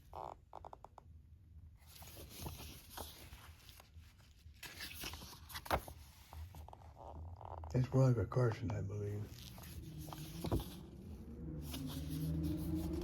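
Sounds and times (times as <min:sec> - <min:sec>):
paper rustling and crackling: 0:01.8 - 0:07.6, 0:09.3 - 0:10.8, 0:11.6 - 0:13.0.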